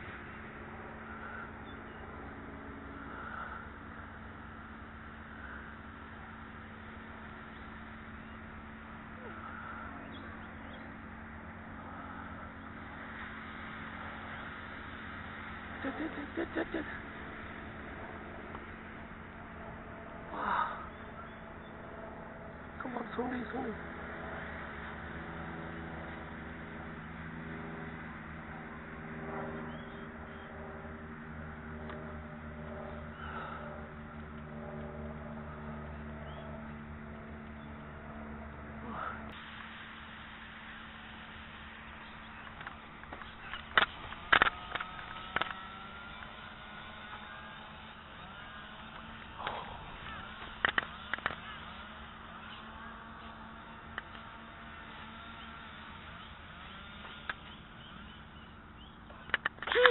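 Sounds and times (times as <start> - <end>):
outdoor background rumble: 0.0 - 59.9
steady mechanical hum: 0.0 - 59.9
faint bird chirps: 9.2 - 10.9.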